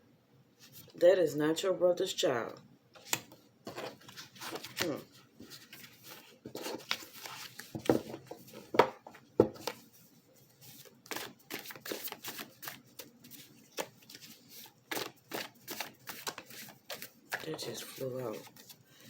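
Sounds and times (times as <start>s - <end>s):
cards being shuffled: 3.0s - 9.0s, 9.6s - 9.9s, 10.6s - 18.8s.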